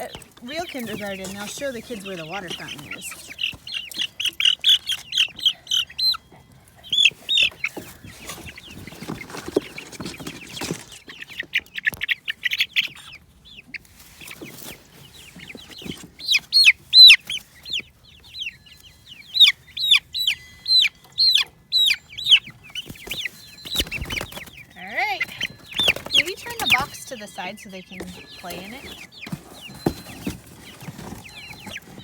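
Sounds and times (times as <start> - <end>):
soft rustle: 0.0 - 5.0, 6.6 - 11.3, 13.7 - 19.1, 22.4 - 32.0
chicks peeping: 0.0 - 32.0.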